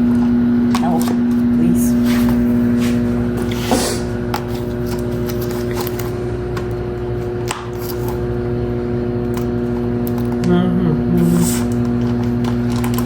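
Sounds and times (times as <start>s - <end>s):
steady machine hum: 0.0s - 13.0s.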